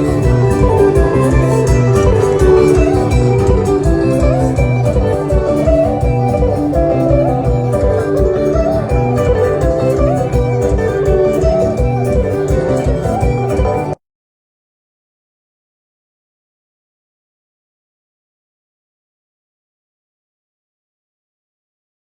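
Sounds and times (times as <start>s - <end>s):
drum beat: 0.0s - 13.8s
bass line: 0.0s - 13.9s
guitar melody: 0.0s - 14.0s.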